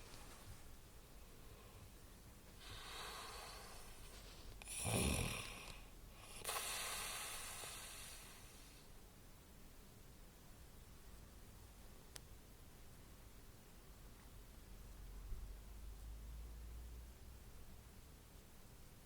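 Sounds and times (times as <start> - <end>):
person snoring: 2.6 - 3.9, 4.6 - 8.5
breathy breathing: 2.6 - 8.9.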